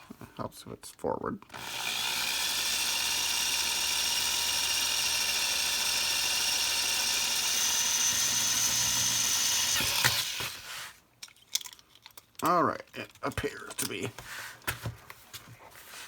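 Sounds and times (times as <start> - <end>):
electric drill whining: 1.5 - 10.7.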